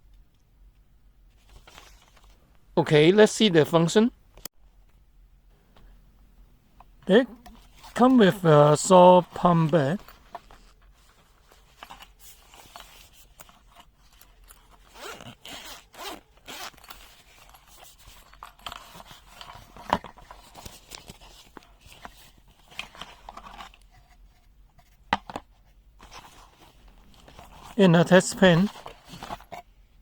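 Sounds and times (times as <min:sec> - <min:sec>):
handling rustles: 0:01.3 - 0:02.7, 0:06.8 - 0:29.8
zipper being pulled open: 0:14.5 - 0:17.5.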